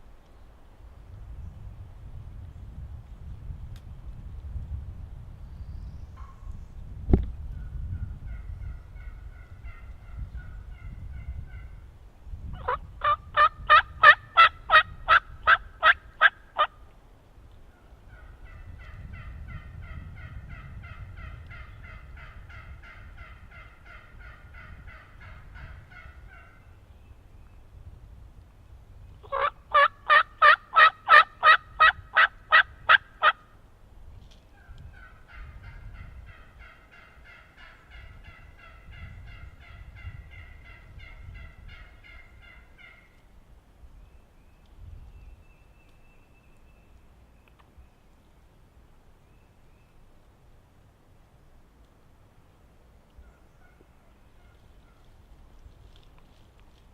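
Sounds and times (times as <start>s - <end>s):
soft turkey calling: 7.6s - 11.8s, 12.6s - 16.9s, 17.5s - 26.8s, 29.2s - 33.5s, 34.5s - 43.3s, 53.0s - 56.8s
wild turkey yelping: 12.6s - 16.7s, 29.2s - 33.4s, 34.6s - 43.2s, 53.2s - 55.1s.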